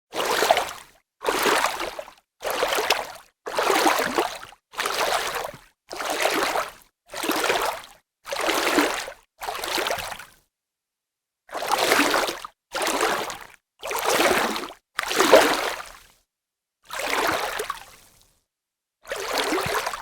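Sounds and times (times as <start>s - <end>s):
water splashing: 19.2s - 20.0s.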